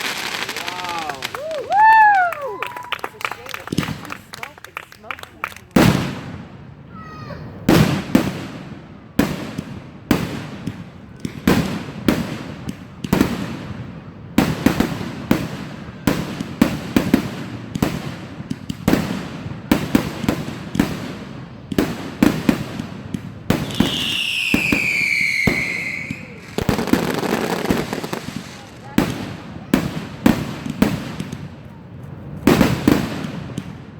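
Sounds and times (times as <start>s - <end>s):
whistling firework: 0.0s - 4.2s, 23.5s - 31.4s
fireworks bangs: 0.0s - 33.9s.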